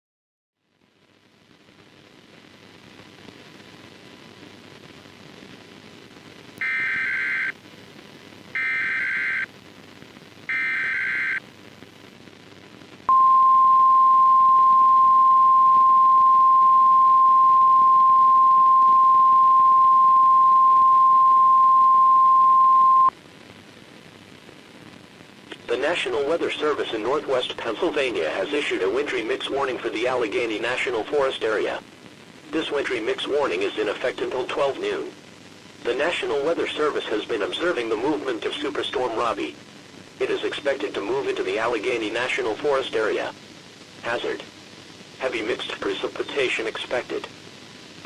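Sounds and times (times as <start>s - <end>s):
warbling data tones: 6.6s - 7.5s, 8.6s - 9.5s, 10.5s - 11.4s
steady hiss: 23.1s - 48.0s.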